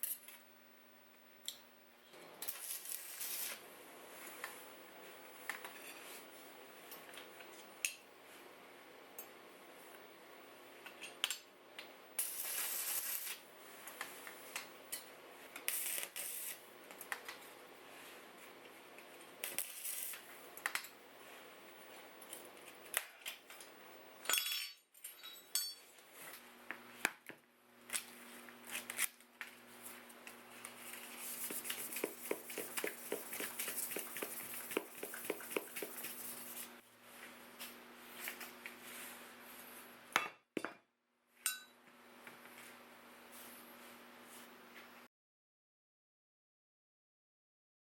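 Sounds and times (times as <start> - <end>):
metal tools clinking and scraping: 24.3 - 25.9
quick regular strokes: 31.0 - 36.8.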